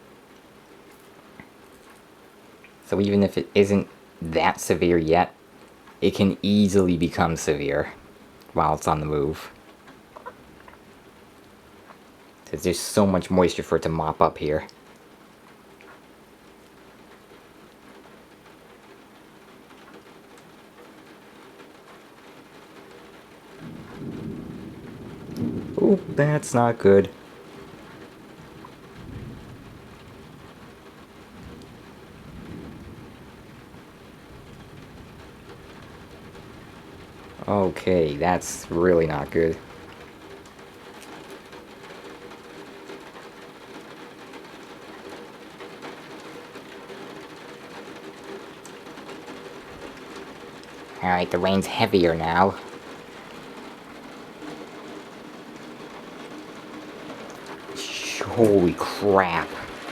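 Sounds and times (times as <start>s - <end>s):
water dripping: 0.0s - 19.2s, 23.4s - 29.3s, 37.1s - 59.9s
faint steady hum: 0.0s - 59.9s
steady rain: 0.0s - 59.9s
low thunder rumble: 23.6s - 43.2s
faint ticks of drops: 25.3s - 25.5s.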